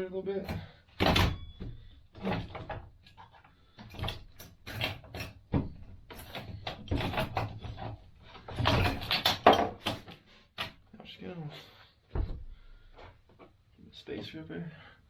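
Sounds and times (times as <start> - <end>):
metal parts and tools clanking: 0.5 - 10.8.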